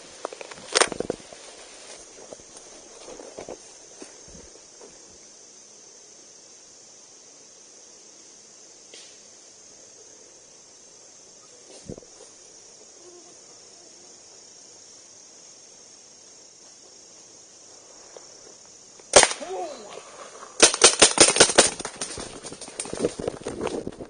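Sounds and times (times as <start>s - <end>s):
insects chirring: 0.0s - 24.0s
paintball markers firing: 20.6s - 23.0s.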